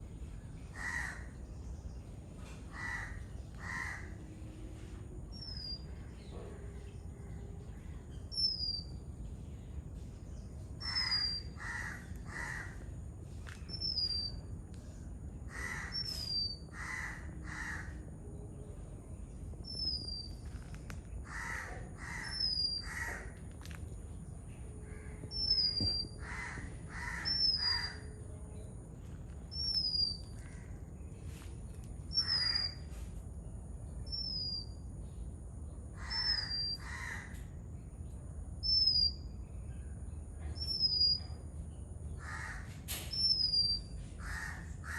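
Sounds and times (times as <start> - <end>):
coarse bird calls: 10.8 - 12.9, 24.9 - 28.2, 32.1 - 32.9, 36.0 - 37.4.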